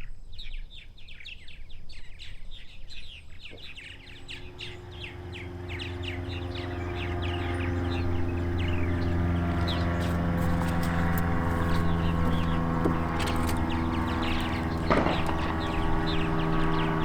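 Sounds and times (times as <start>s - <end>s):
birds chirping: 1.1s - 17.0s
engine running steadily: 3.4s - 17.0s.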